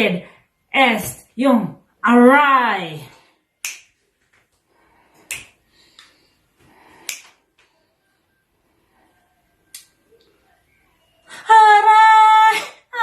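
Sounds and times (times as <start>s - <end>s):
finger snaps: 3.6s - 4.0s, 5.2s - 6.2s, 7.0s - 7.7s, 9.7s - 10.3s.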